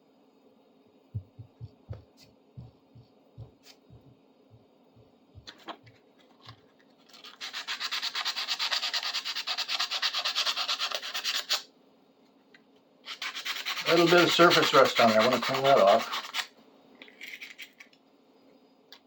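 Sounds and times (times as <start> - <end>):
fast scrubbing on metal: 13.1 - 16.5.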